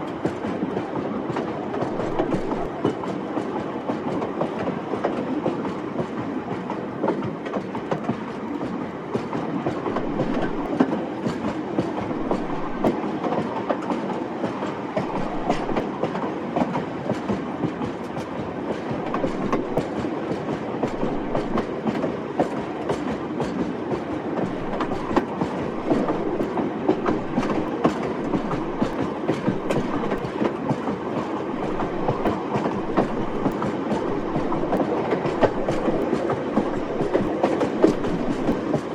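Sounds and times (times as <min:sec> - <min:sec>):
train rumbling on track: 0:00.0 - 0:38.9.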